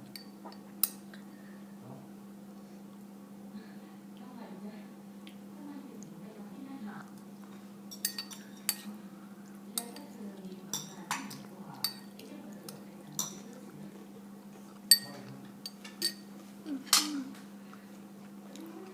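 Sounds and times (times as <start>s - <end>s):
faint low hum: 0.0s - 18.9s
cutlery clinking on dishes: 7.9s - 8.9s, 10.7s - 13.5s, 14.9s - 16.3s, 16.9s - 17.2s.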